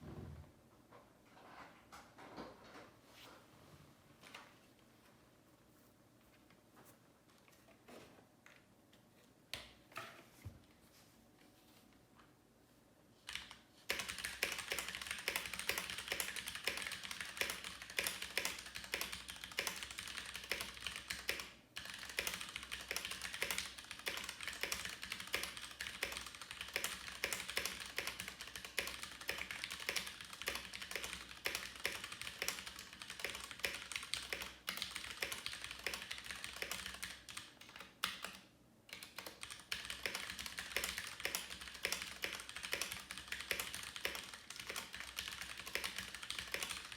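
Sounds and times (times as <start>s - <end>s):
mechanical keyboard typing: 13.2s - 46.9s.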